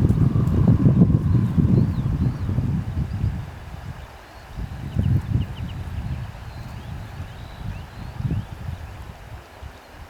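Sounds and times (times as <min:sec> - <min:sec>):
wind buffeting microphone: 0:00.0 - 0:10.0.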